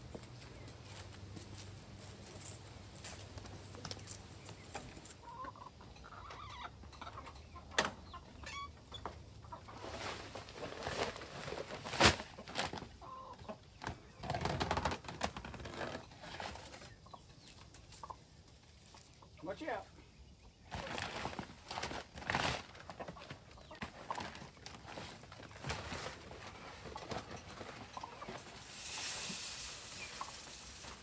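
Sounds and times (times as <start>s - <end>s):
rustling noise: 0.0s - 5.2s, 9.6s - 13.0s, 20.7s - 31.0s
chickens clucking: 0.0s - 31.0s.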